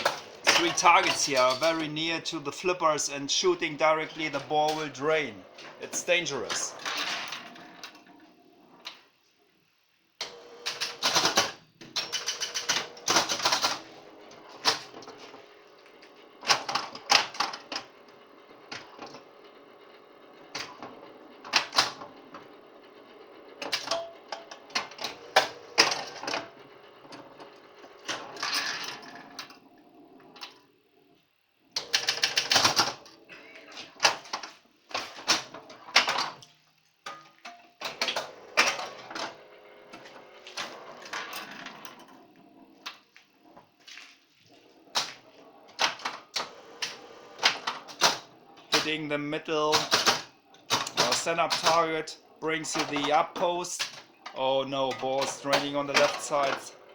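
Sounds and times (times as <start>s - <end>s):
pinball machine mechanical clacking: 0.0s - 7.9s, 10.6s - 13.8s, 23.5s - 29.5s, 31.8s - 33.1s, 45.7s - 56.9s.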